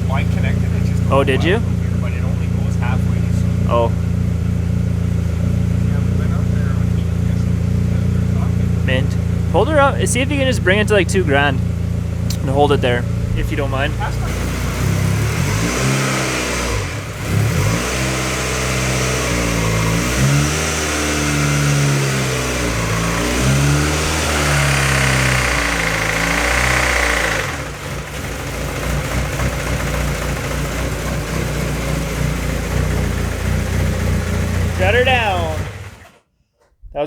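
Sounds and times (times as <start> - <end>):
car engine idling: 0.0 - 36.3
valve clatter: 22.5 - 30.6.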